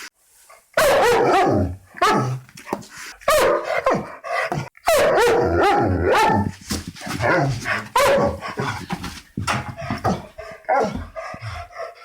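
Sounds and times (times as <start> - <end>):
dog barking aggressively: 0.8 - 2.4, 3.2 - 4.2, 4.8 - 8.8.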